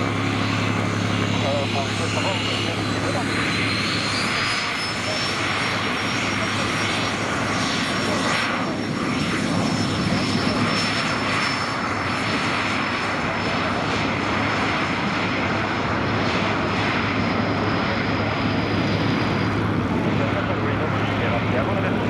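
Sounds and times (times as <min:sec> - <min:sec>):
jet engines at takeoff power: 0:00.0 - 0:22.0.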